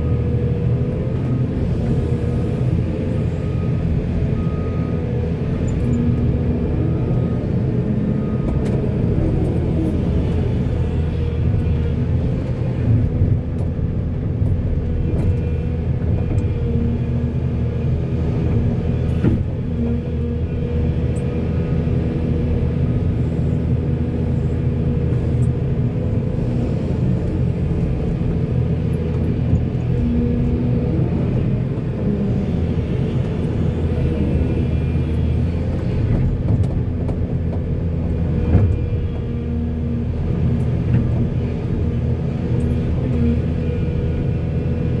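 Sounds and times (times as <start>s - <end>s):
diesel engine rumbling: 0.0s - 45.0s.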